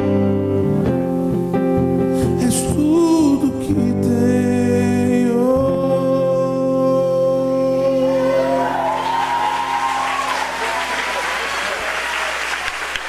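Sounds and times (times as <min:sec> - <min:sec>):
worship band playing: 0:05.3 - 0:13.0
voices singing: 0:07.4 - 0:09.5
crowd applause and cheering: 0:08.0 - 0:13.0.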